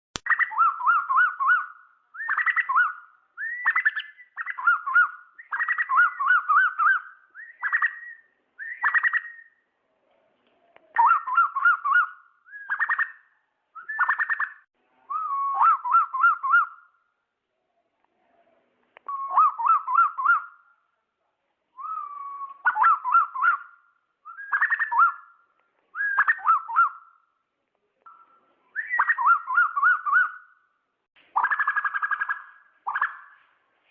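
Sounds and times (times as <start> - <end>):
bird calling in whistled notes: 0.2 - 9.6, 10.7 - 17.0, 19.0 - 20.8, 21.8 - 27.3, 28.1 - 30.7.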